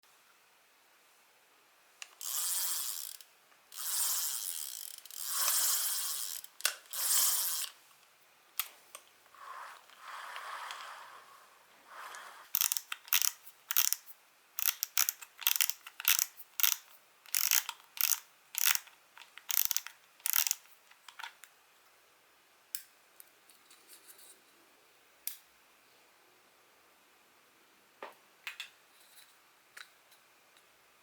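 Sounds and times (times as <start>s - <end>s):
fishing reel clicks: 2.2s - 7.7s, 12.5s - 20.7s
fishing reel ratcheting: 2.2s - 7.7s, 12.5s - 20.7s.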